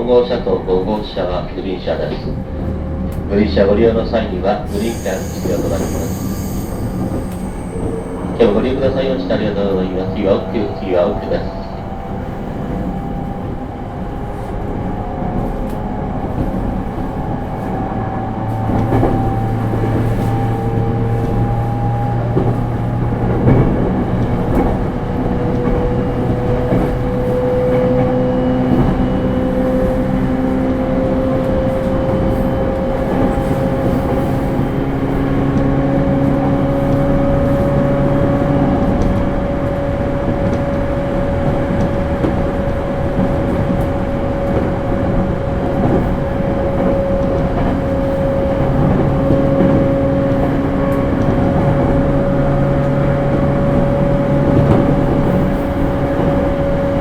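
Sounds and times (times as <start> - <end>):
wheels rumbling on rail: 0.0 - 57.0
train motors whining: 4.2 - 30.9.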